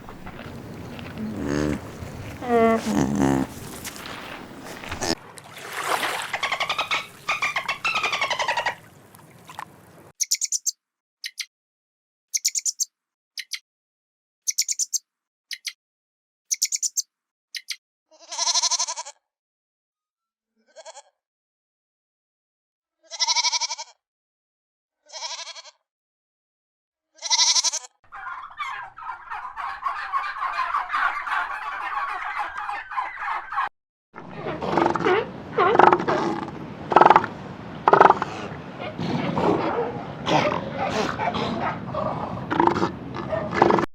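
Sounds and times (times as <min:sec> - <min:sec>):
goat bleating: 0:00.1 - 0:05.2, 0:18.2 - 0:19.1, 0:23.1 - 0:23.8, 0:25.1 - 0:25.8, 0:27.2 - 0:27.9.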